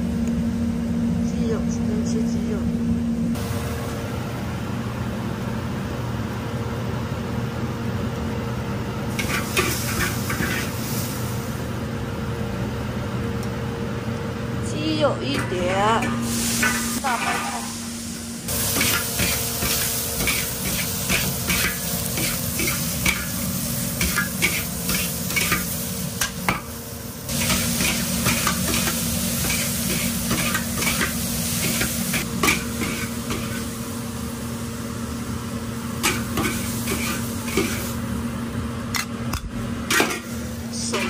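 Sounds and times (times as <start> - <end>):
cabbage sizzling in a pan: 9.1 - 11.6, 16.2 - 38.2.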